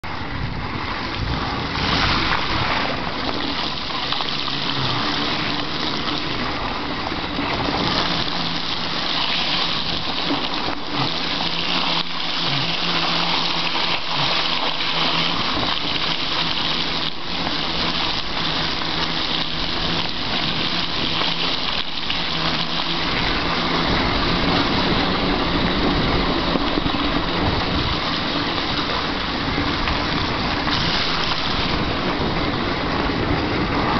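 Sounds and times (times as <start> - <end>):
bike tyres splashing through mud: 7.4 - 33.9.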